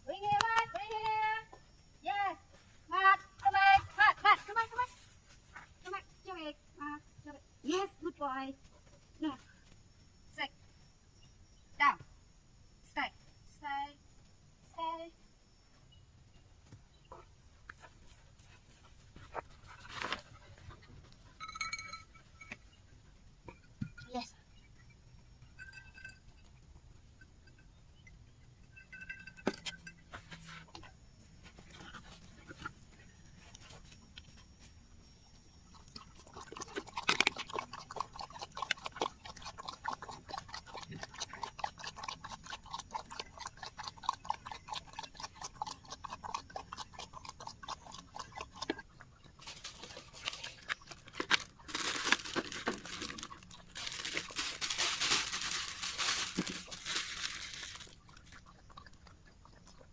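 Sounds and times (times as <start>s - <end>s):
dog crunching food: 35.7s - 59.9s.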